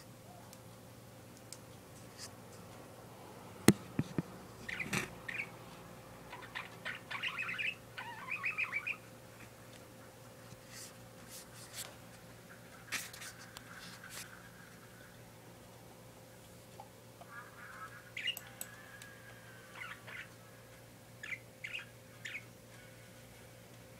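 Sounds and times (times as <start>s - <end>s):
parakeet chirping: 4.6s - 5.6s, 6.3s - 9.1s, 17.6s - 18.9s, 19.7s - 20.4s, 21.2s - 22.5s.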